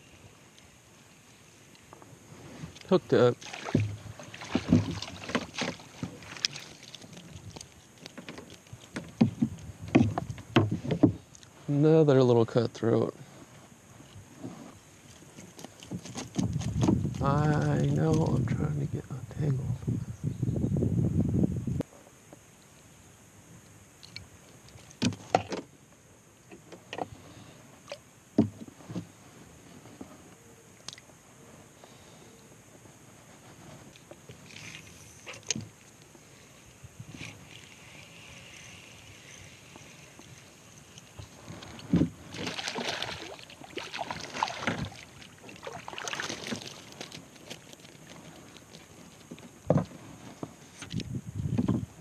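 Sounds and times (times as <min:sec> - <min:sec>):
water splashing and sloshing: 0:02.3 - 0:11.4, 0:39.7 - 0:51.8
fishing gear clicks and knocks: 0:15.0 - 0:18.4, 0:44.5 - 0:51.9.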